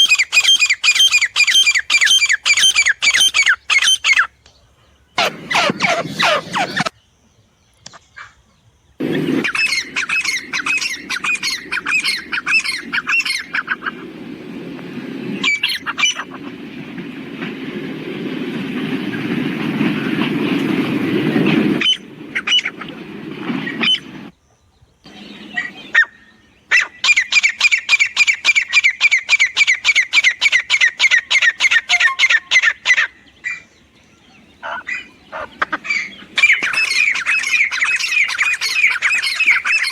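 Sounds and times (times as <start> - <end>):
francolins calling: 0.0 - 7.1, 7.8 - 39.9
steady rush of noise: 9.0 - 24.3.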